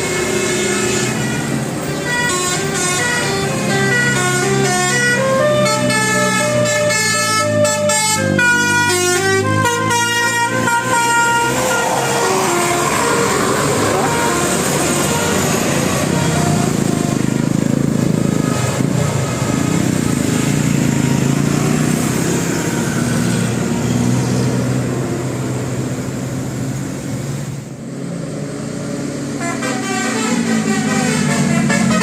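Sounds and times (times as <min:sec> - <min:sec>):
musical bus horns: 0:00.0 - 0:22.8, 0:29.2 - 0:32.0.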